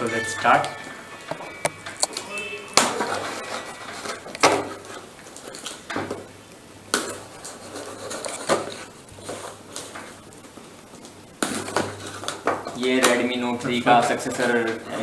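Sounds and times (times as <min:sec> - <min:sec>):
cardboard packaging being handled: 0:07.0 - 0:10.2.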